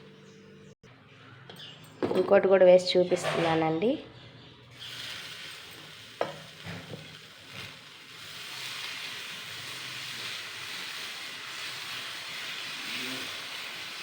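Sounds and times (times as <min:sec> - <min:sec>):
batter sizzling on a pan: 0:04.7 - 0:14.0.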